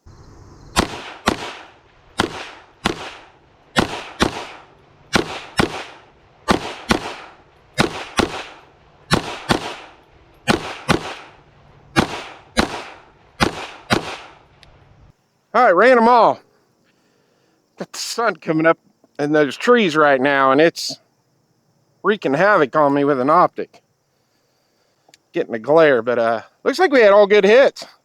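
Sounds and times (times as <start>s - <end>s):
pistol shots with echo: 0.7s - 14.4s.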